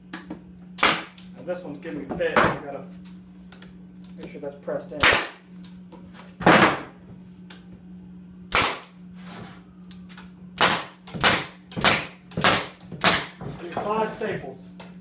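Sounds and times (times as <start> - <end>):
pneumatic stapler shots: 0.8 - 1.2, 5.0 - 5.4, 8.5 - 9.0, 10.6 - 13.4.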